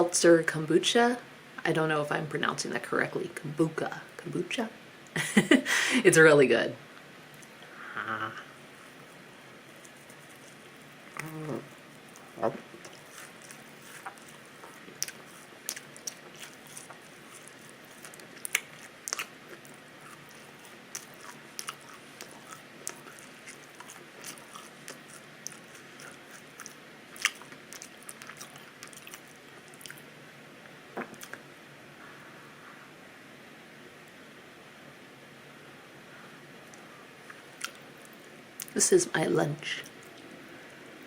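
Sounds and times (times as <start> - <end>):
open-mouthed chewing: 8.8 - 30.1, 36.7 - 38.8.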